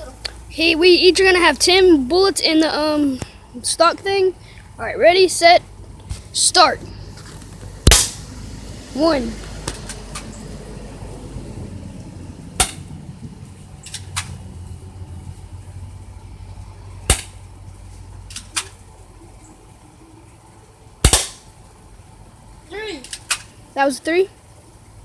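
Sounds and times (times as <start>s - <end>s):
airsoft gun shots: 7.8s - 8.2s, 12.6s - 12.9s, 17.1s - 17.4s, 21.0s - 21.5s.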